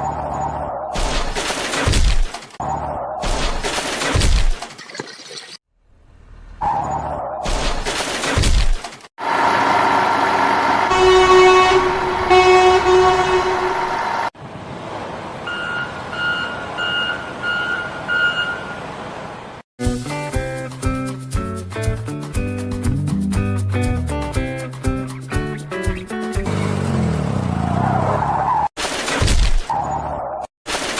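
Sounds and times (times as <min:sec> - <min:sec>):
truck engine running: 0:09.2 - 0:14.3
truck horn honks: 0:10.7 - 0:14.3
reversing beeps: 0:15.5 - 0:18.8.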